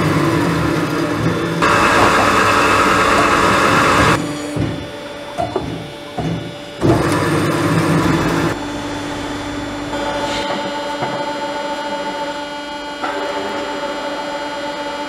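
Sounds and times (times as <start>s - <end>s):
bandsaw running: 0.0s - 4.6s.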